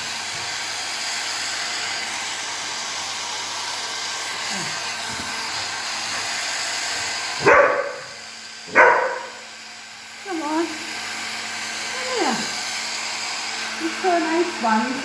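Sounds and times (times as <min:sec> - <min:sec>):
hair dryer blowing: 0:00.0 - 0:15.0
dog barking: 0:07.4 - 0:09.4.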